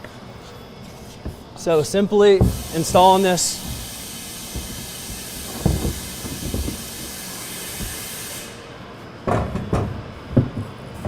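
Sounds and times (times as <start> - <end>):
steady hiss: 0.8 - 9.1
plastic tank knocking: 4.5 - 6.9.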